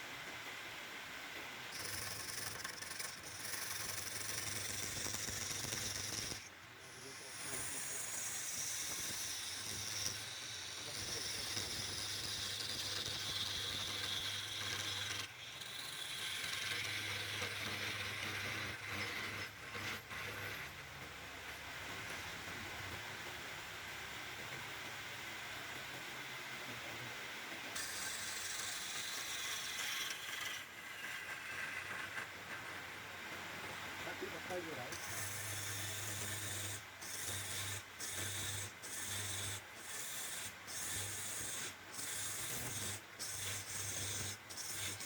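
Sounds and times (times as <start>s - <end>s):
turning tool scraping wood: 1.7s - 20.8s, 27.8s - 32.8s, 34.5s - 45.0s
wood lathe humming: 7.1s - 20.8s.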